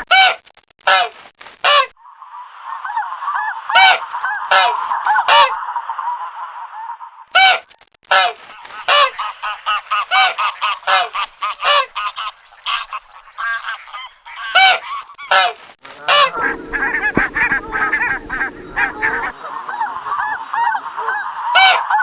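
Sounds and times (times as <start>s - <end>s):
geese honking: 2.8s - 5.6s, 7.4s - 22.0s.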